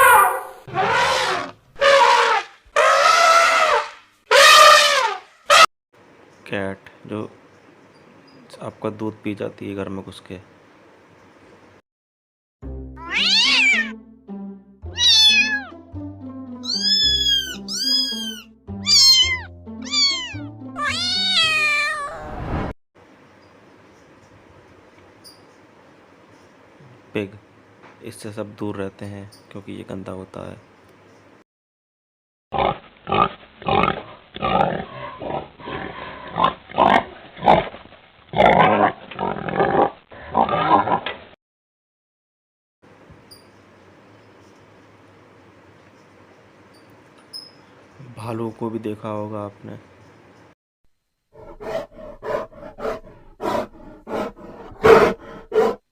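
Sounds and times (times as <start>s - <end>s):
pig calling: 0.0s - 5.6s, 13.0s - 13.9s, 14.9s - 15.7s, 16.6s - 21.8s, 32.6s - 37.7s, 51.4s - 55.8s
background music: 12.6s - 21.2s
cat meowing: 13.0s - 13.9s, 14.9s - 15.8s, 16.6s - 22.4s.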